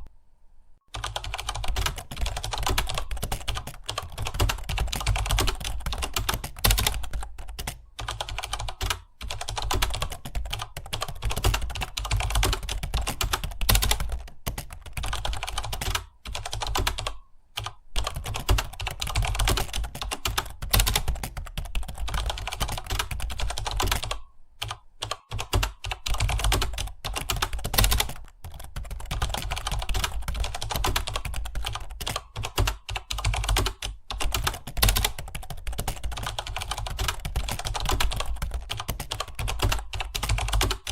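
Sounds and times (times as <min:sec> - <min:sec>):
fast typing on keyboard: 0:00.9 - 0:40.9.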